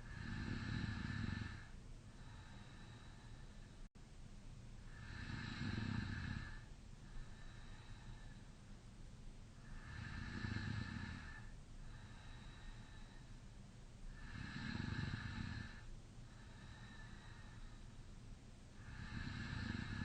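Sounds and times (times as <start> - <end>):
man snoring: 0.1 - 1.7, 4.9 - 6.7, 9.7 - 11.5, 14.2 - 15.8, 18.8 - 20.0.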